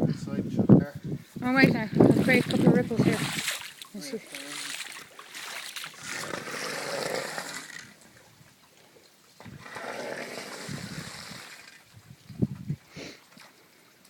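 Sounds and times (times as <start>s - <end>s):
feet sloshing through water: 2.0s - 7.8s.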